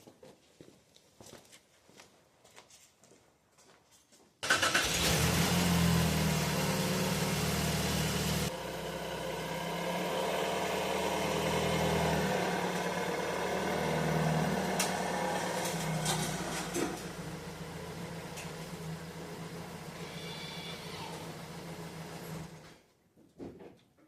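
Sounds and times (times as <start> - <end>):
car engine idling: 4.4 - 22.7.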